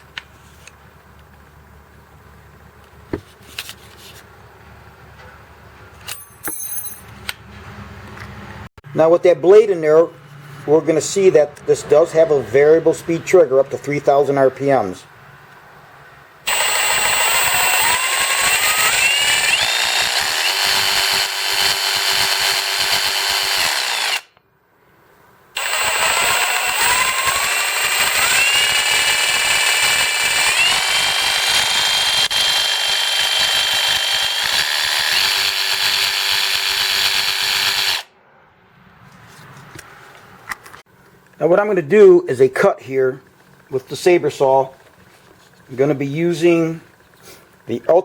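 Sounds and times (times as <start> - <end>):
jigsaw motor whining: 16.5 - 24.3, 25.6 - 38.1.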